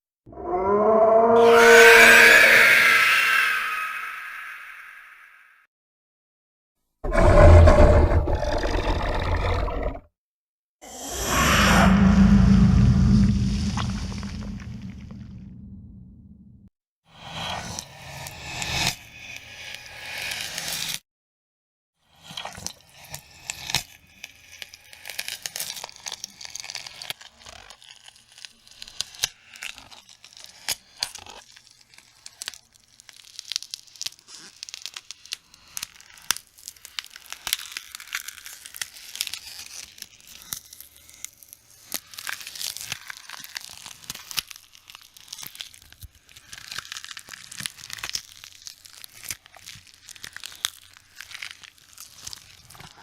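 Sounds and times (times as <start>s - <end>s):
tearing and crackling: 25.0s - 31.1s, 31.8s - 53.0s.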